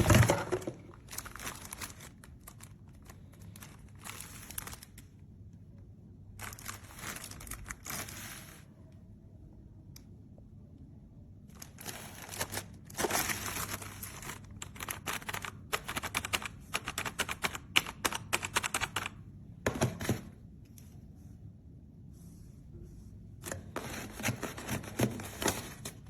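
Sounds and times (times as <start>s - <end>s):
typing on a mechanical keyboard: 13.6s - 19.2s.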